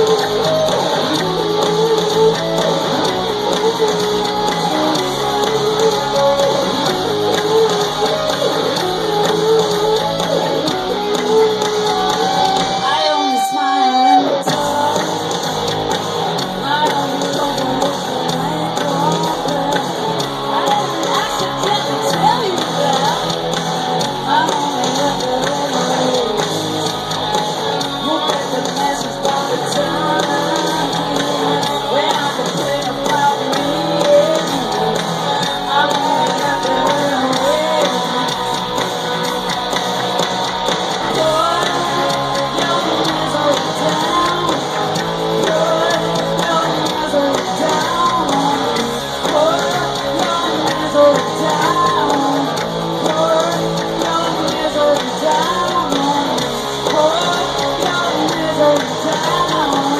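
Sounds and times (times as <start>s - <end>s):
drums: 0.0s - 59.9s
guitars: 0.0s - 59.9s
person singing: 0.0s - 59.9s.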